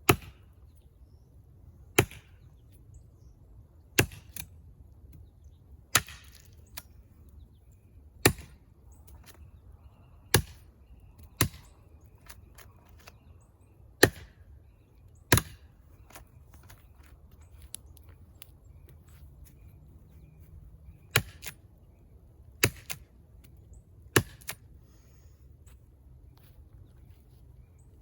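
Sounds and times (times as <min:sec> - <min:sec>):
brush knife chopping tree trunk: 0:00.1 - 0:00.5, 0:01.9 - 0:02.4, 0:04.0 - 0:04.5, 0:05.9 - 0:06.8, 0:08.2 - 0:09.4, 0:10.3 - 0:13.2, 0:14.0 - 0:14.4, 0:15.3 - 0:17.1, 0:21.0 - 0:21.6, 0:22.6 - 0:23.1, 0:24.1 - 0:24.7.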